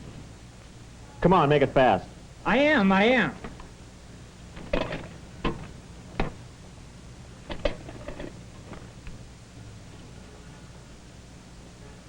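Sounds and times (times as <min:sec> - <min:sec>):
low hum of film soundtrack: 0:00.0 - 0:12.0
sharp clicks and knocks: 0:04.5 - 0:06.4, 0:07.5 - 0:09.2.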